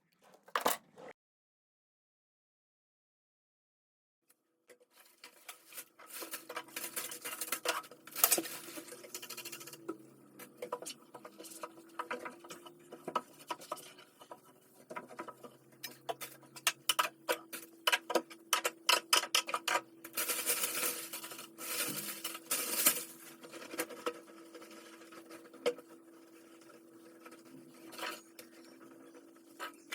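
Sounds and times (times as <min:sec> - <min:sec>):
faint steady hum: 0:04.7 - 0:29.9
rustling: 0:04.9 - 0:18.3, 0:19.6 - 0:29.9.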